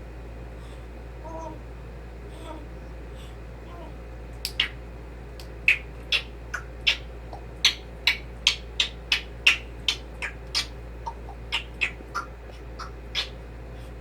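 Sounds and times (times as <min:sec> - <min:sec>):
parrot making sharp clicks: 0:04.4 - 0:04.8, 0:05.4 - 0:13.3.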